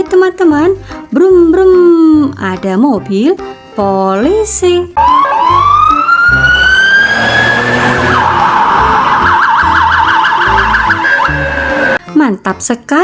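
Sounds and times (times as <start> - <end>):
police siren wail and yelp: 5.0 - 12.0.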